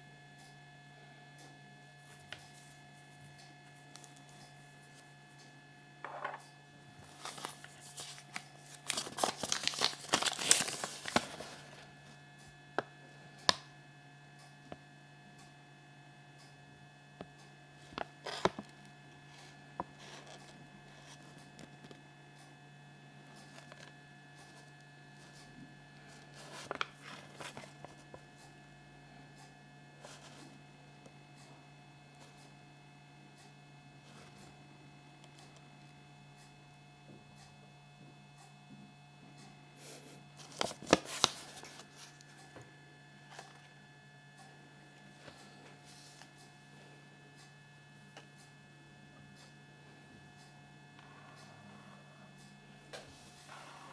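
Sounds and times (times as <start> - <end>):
low mains hum: 0.0 - 53.9
foil wrapper crinkling and tearing: 7.1 - 11.9.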